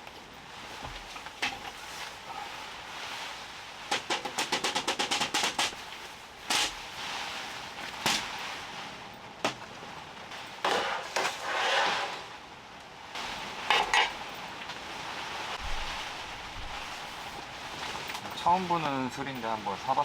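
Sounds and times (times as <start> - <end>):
rustling: 0.0 - 12.4, 13.2 - 19.0
objects clattering: 13.7 - 14.2.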